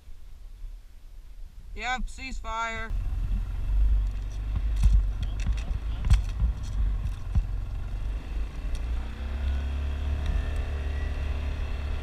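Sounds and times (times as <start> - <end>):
engine running: 2.9 - 12.0
wind rumble on microphone: 2.9 - 12.0.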